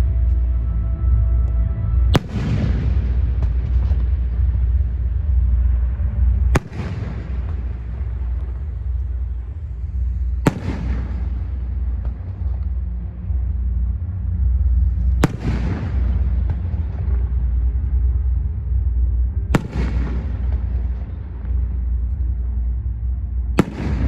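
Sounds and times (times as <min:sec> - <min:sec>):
steady low rumble: 0:00.0 - 0:24.0
firework bangs with echo: 0:02.2 - 0:05.2, 0:06.3 - 0:09.4, 0:10.4 - 0:12.8, 0:15.2 - 0:17.9, 0:19.5 - 0:21.6, 0:23.6 - 0:24.0.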